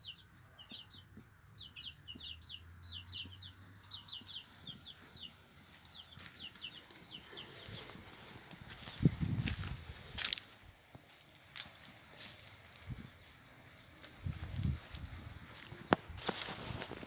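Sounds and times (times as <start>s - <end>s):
bird chirping: 0.0s - 8.0s.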